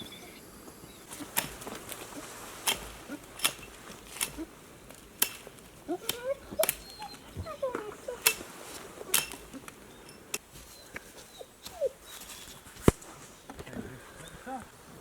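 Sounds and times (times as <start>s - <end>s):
campfire crackling and popping: 0.0s - 7.3s.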